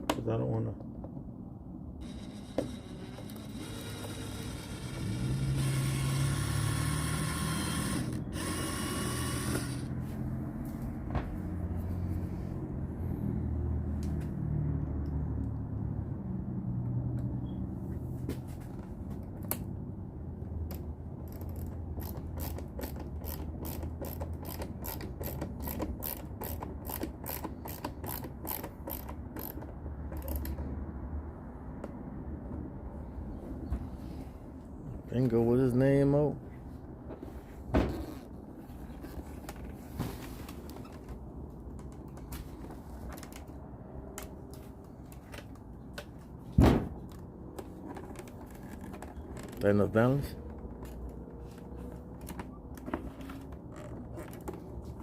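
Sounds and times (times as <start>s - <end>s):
high whir: 2.0s - 9.9s
ratchet tool clicking: 21.3s - 29.6s.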